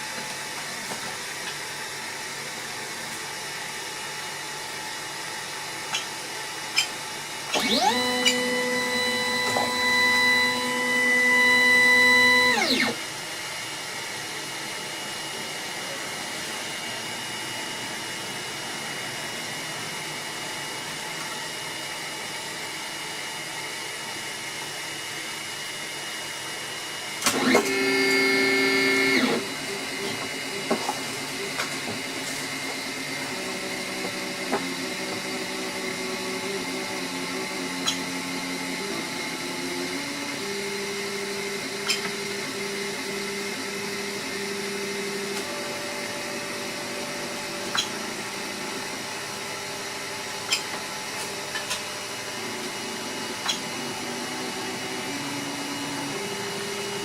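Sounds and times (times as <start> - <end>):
stepper motors whining: 7.5 - 13.0, 27.2 - 46.1.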